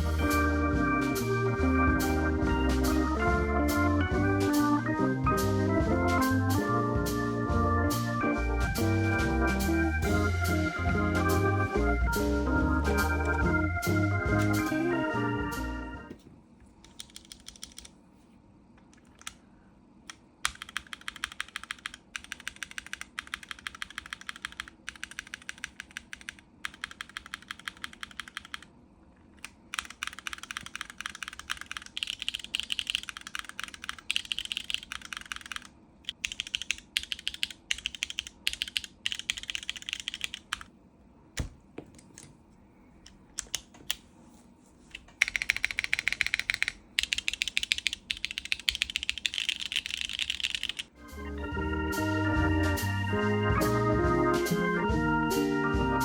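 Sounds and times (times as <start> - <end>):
mechanical keyboard typing: 16.8 - 18.0, 19.0 - 19.4, 20.1 - 28.7, 29.4 - 40.7, 43.4 - 44.0, 44.9 - 50.9.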